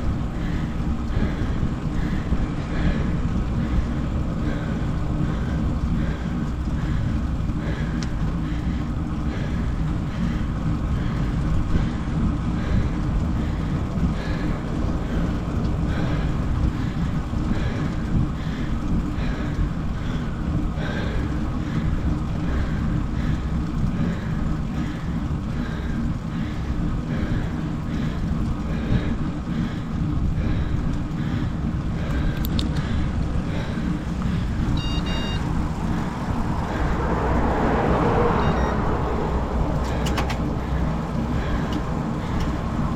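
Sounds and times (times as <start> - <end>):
wind buffeting microphone: 0.0 - 42.9.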